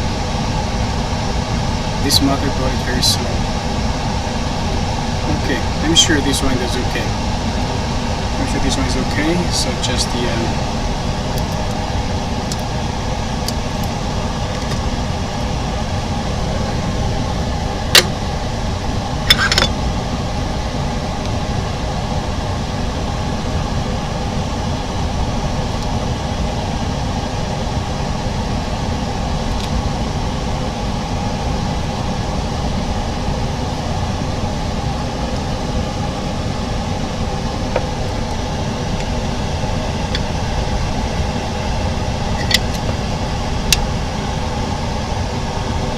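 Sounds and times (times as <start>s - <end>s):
machinery hum and hiss: 0.0s - 45.9s.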